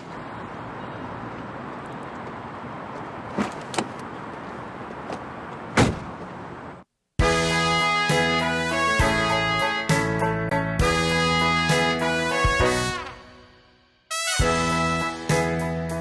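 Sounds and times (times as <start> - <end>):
background noise: 0.0 - 7.2
music: 7.2 - 16.0.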